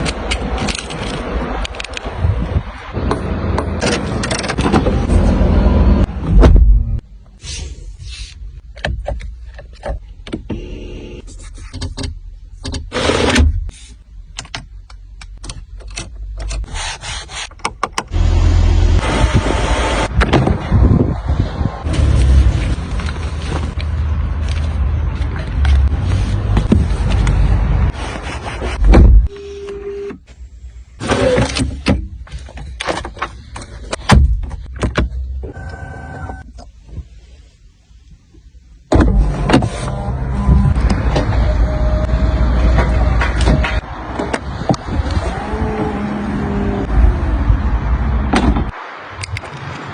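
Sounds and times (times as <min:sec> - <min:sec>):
car low rumble: 0:00.0 - 0:11.2, 0:18.1 - 0:29.3, 0:32.0 - 0:49.9.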